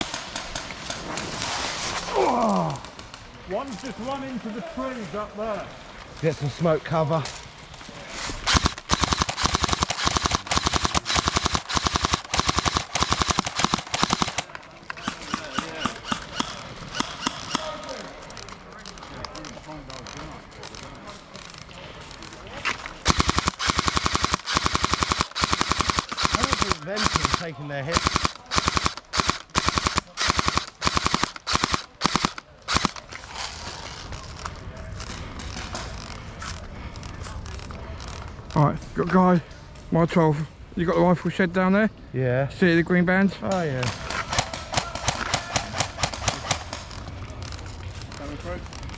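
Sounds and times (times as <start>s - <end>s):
airsoft guns firing bursts: 0.0s - 1.3s, 8.4s - 18.5s, 23.0s - 33.2s, 43.8s - 48.9s
steady noise: 8.3s - 14.5s, 23.0s - 36.9s
airsoft single shots: 8.5s - 17.8s, 23.1s - 33.0s.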